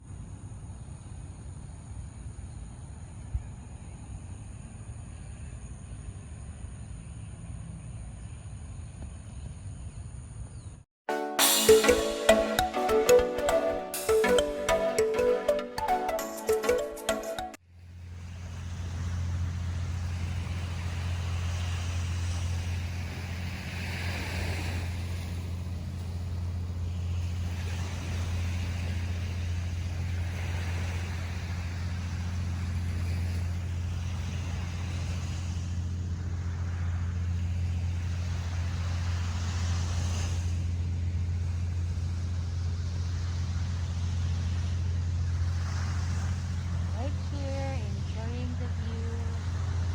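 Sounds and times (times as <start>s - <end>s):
low rumble of surf: 17.7s - 49.9s
waves washing on beach: 18.1s - 49.9s.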